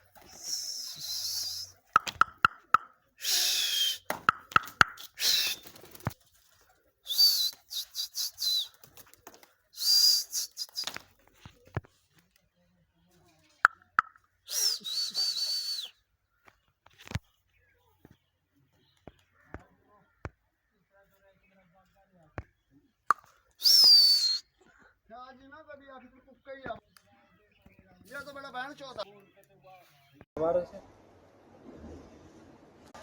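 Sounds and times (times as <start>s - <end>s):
bird whistling calls: 0.3s - 5.8s, 7.1s - 8.8s, 14.5s - 16.0s, 23.6s - 24.5s
sharp clicks: 1.9s - 2.9s, 4.1s - 6.1s.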